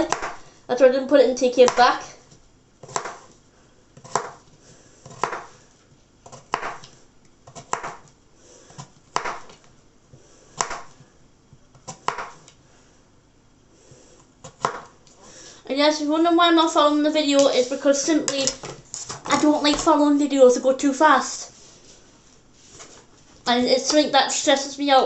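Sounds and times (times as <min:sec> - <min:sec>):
knife chopping on a board: 0:00.0 - 0:00.4, 0:02.8 - 0:03.4, 0:04.0 - 0:05.6, 0:06.2 - 0:09.6, 0:10.6 - 0:11.1, 0:11.7 - 0:12.6, 0:14.4 - 0:15.0.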